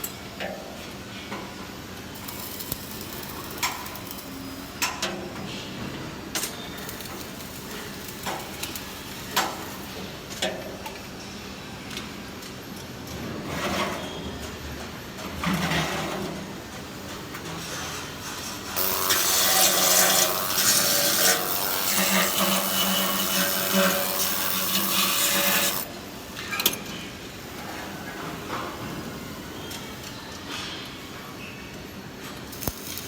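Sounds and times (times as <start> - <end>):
welding arc crackling and hissing: 2.2 - 4.9, 6.8 - 10.0, 18.8 - 25.9, 32.5 - 33.0.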